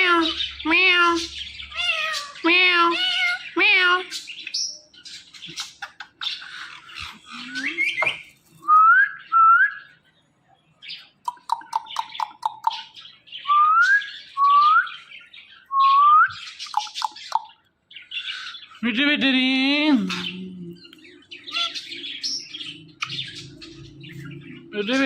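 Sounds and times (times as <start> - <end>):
parrot chattering: 0.0 - 4.4, 5.3 - 8.3, 11.2 - 13.0, 16.6 - 25.0
squawky chirps: 0.0 - 8.3.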